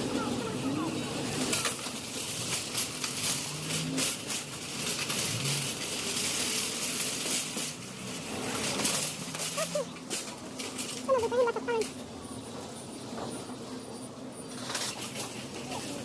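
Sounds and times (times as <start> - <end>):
faint distant voices: 0.0 - 4.6, 9.2 - 16.0
rustling: 0.3 - 13.8
clicks and clatter: 1.2 - 12.1, 14.5 - 16.0.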